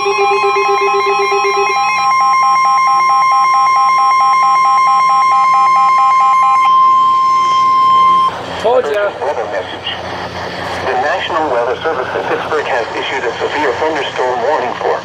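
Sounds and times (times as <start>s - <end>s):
lower pulsing beep: 0.0s - 8.4s
rapid pulsing alert beeps: 0.0s - 8.4s
steady warning alarm tone: 0.0s - 8.6s.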